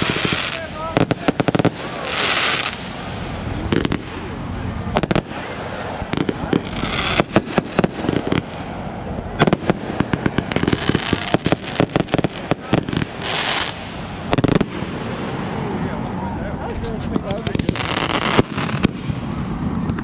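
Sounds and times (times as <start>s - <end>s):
hissing crackling firework bursts: 0.0s - 15.8s, 16.5s - 20.0s
fireworks pops and bangs: 0.0s - 20.0s.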